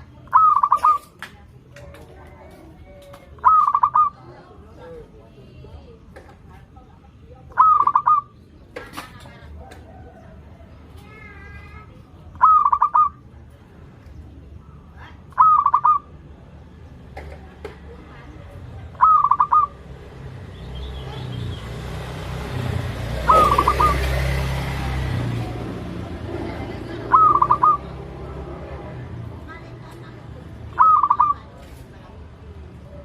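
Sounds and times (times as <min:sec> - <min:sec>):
dove cooing: 0:00.3 - 0:01.1, 0:02.4 - 0:05.0, 0:07.5 - 0:08.4, 0:12.3 - 0:13.2, 0:15.2 - 0:16.2, 0:18.9 - 0:19.8, 0:23.1 - 0:24.5, 0:26.7 - 0:28.4, 0:30.6 - 0:31.6
rushing background noise: 0:06.8 - 0:33.0.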